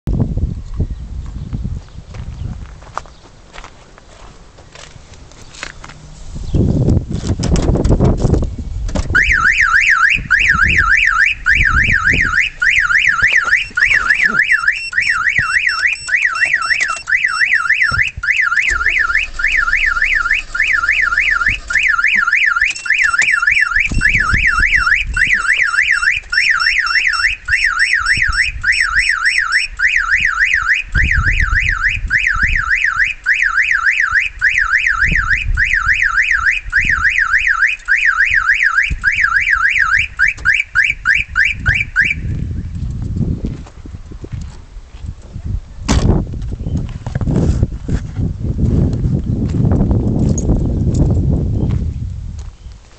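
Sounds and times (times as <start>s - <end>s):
car alarm siren warbling: 9.2s - 42.4s.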